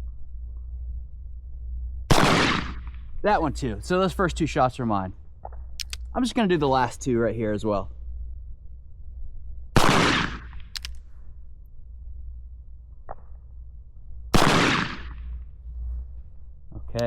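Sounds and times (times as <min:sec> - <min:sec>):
revolver shots: 0:02.1 - 0:03.0, 0:09.8 - 0:10.7.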